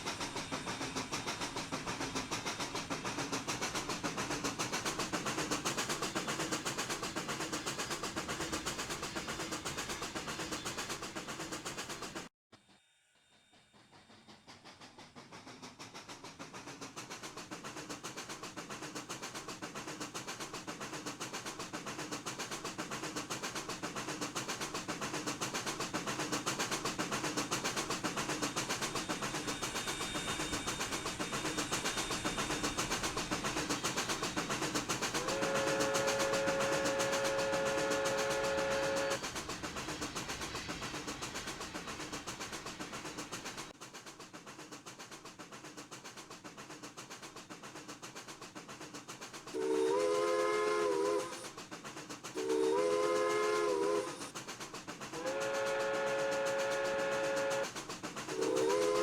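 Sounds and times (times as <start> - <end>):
moving train noise: 0.0 - 59.0
steam locomotive whistle blasts: 35.2 - 39.2, 49.5 - 51.5, 52.4 - 54.3, 55.2 - 59.0.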